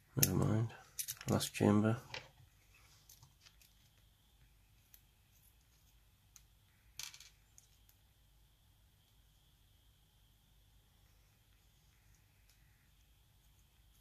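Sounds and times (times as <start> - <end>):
small lock pins clicking: 0.2 - 1.4.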